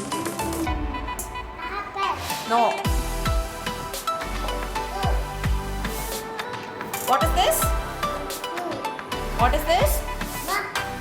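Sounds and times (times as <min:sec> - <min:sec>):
electronic beat music: 0:00.0 - 0:11.0
deep kick-drum hits: 0:02.9 - 0:04.0, 0:04.8 - 0:06.1, 0:07.2 - 0:08.2, 0:09.4 - 0:10.2.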